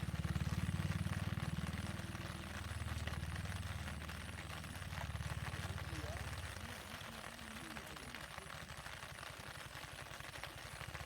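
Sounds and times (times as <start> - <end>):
vehicle engine pulsing: 0.0 - 6.6.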